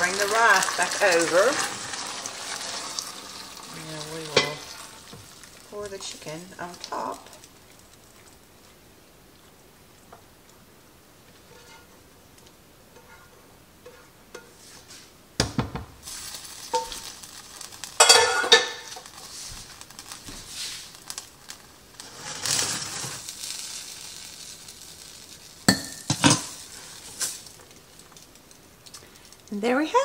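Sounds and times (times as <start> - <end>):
food sizzling: 0.0 - 30.0
metal utensil scraping pan: 4.0 - 4.9, 11.3 - 12.0, 12.9 - 15.0, 16.1 - 21.0, 22.0 - 23.3.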